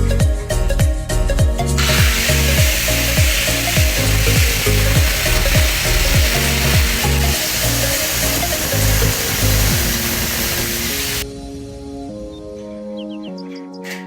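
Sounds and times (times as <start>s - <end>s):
upbeat music with beat and bass: 0.0s - 11.2s
steady hiss: 1.8s - 11.2s.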